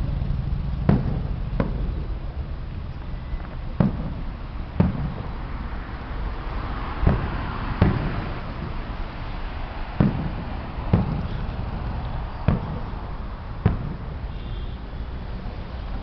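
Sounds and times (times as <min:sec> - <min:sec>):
low background rumble: 0:00.0 - 0:09.2
fireworks booming: 0:00.8 - 0:14.8.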